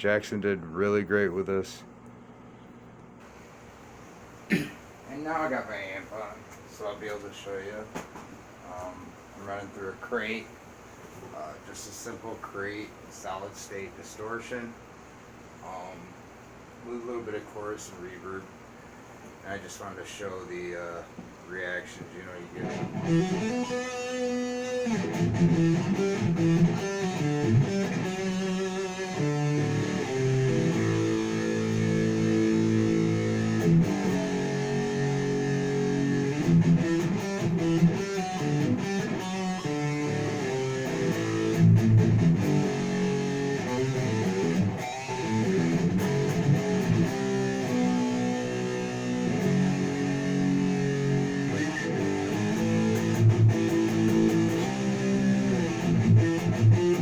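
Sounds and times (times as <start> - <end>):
distorted electric guitar riffs: 22.6 - 57.0.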